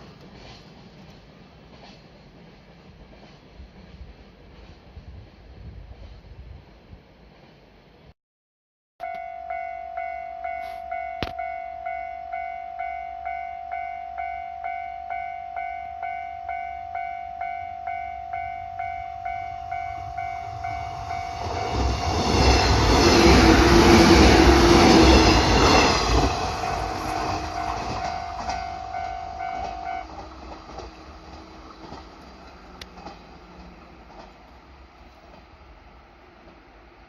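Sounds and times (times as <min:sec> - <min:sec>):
train rumbling across crossing: 0:00.0 - 0:08.1, 0:09.1 - 0:37.0
level-crossing alarm pulsed tone: 0:09.0 - 0:31.4.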